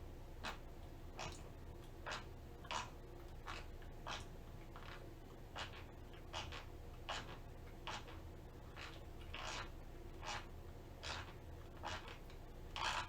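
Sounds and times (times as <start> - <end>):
low steady hum: 0.0 - 13.0
teeth grinding: 11.0 - 13.0.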